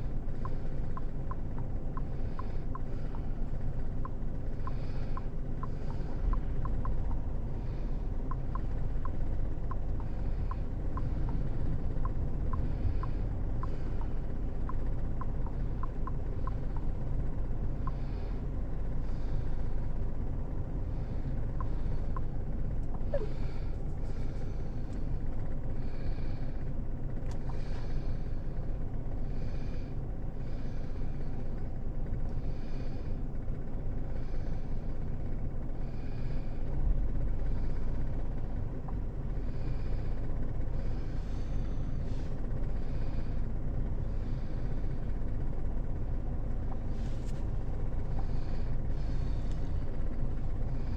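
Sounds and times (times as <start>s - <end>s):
light ticking: 0.4s - 7.2s, 8.2s - 17.2s.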